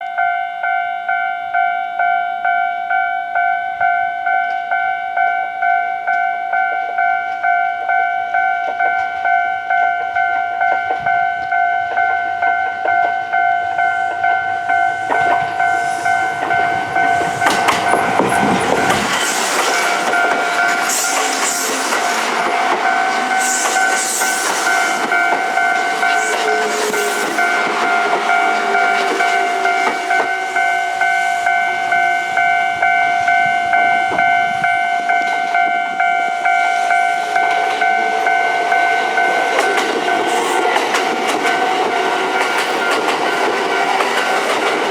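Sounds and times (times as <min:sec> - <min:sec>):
level crossing alarm clanging: 0:00.0 - 0:44.9
electric train passing: 0:00.2 - 0:44.9
wheels clacking over rail joints: 0:08.6 - 0:32.5, 0:33.2 - 0:44.9.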